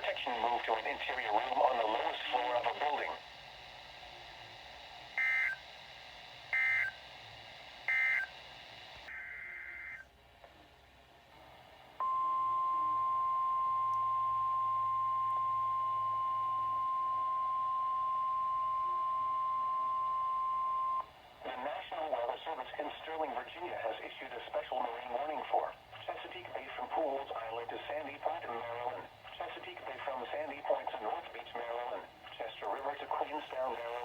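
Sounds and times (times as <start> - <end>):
steady alarm tone: 5.1 - 10.0.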